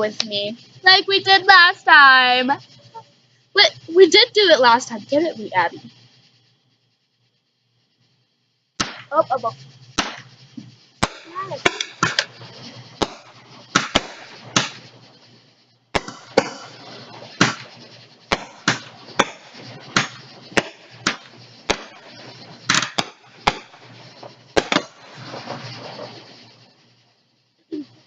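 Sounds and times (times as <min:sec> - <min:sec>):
fireworks bangs and cracks: 0:08.8 - 0:26.9.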